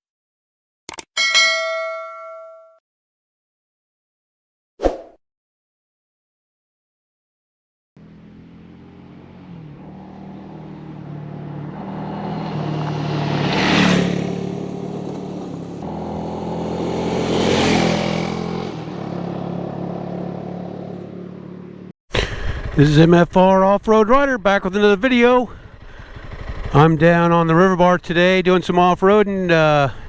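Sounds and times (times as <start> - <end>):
vehicle engine running: 8.0 - 13.4, 19.0 - 30.0.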